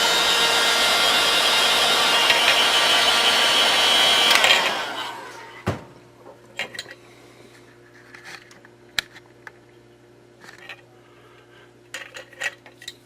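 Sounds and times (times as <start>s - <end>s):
faint steady hum: 5.6s - 13.0s.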